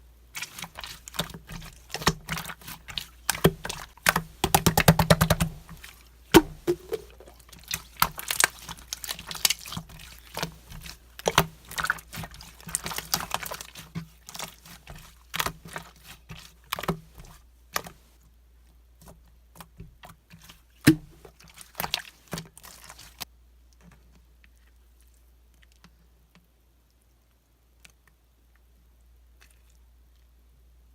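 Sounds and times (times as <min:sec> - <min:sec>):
slime squeezed by hand: 0:00.4 - 0:16.5.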